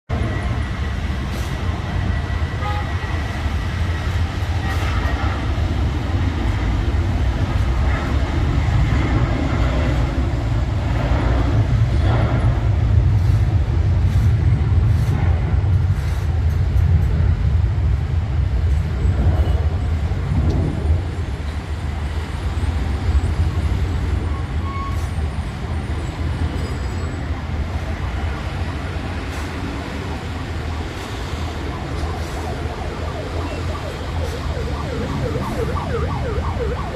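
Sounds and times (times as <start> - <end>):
jet engines low rumble: 0.1 - 36.9.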